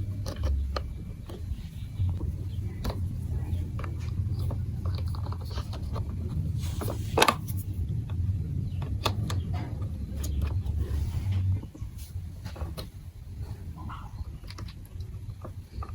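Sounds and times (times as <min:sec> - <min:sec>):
plastic blocks clicking and clacking: 0:00.0 - 0:08.2, 0:08.8 - 0:10.9, 0:13.6 - 0:15.9
steady low hum: 0:00.0 - 0:15.9.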